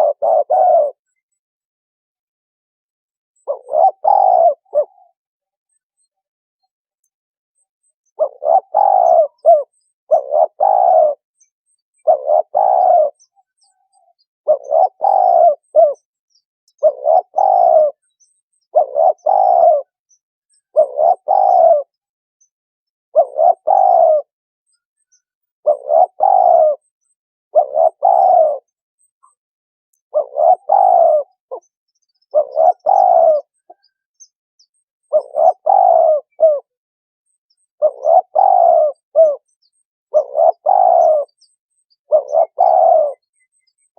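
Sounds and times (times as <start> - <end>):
dove cooing: 0.0 - 1.2, 3.4 - 5.2, 8.1 - 11.3, 12.0 - 16.1, 16.8 - 20.0, 20.7 - 22.0, 23.2 - 24.3, 25.6 - 26.9, 27.5 - 29.4, 30.1 - 31.7, 32.3 - 34.0, 35.1 - 36.8, 37.7 - 39.5, 40.1 - 43.4.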